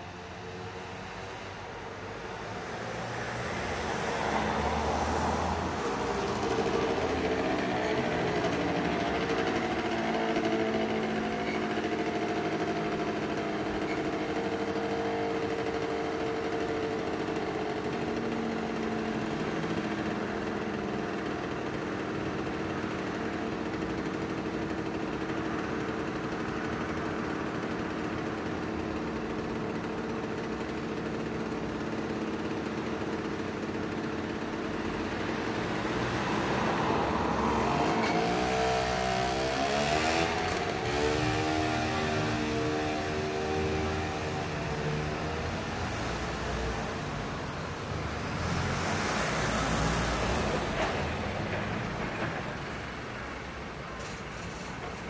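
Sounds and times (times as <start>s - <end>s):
street noise hum: 0.0s - 55.0s
vehicle accelerating: 2.5s - 21.4s, 34.7s - 52.5s
car and motorcycle engines idling: 3.6s - 38.4s, 39.2s - 55.0s.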